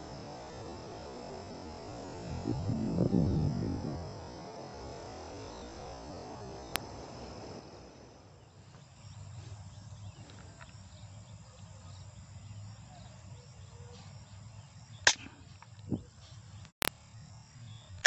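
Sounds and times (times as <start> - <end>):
insects chirping: 0.0 - 18.0
loud sharp crack: 15.1 - 15.4.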